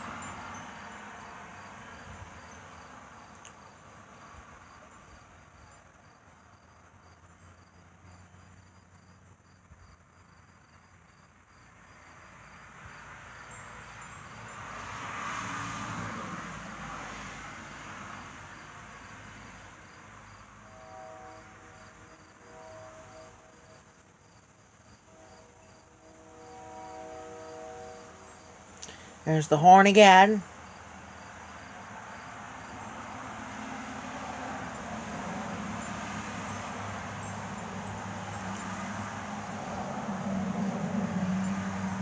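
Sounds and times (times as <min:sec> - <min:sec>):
crickets chirping: 0:00.0 - 0:14.9, 0:30.4 - 0:42.0.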